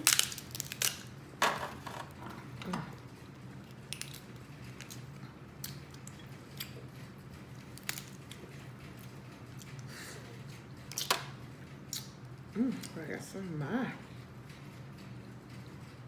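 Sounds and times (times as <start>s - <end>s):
low steady hum: 0.0s - 16.0s
chewing and mouth smacking: 2.8s - 11.2s, 11.8s - 13.0s.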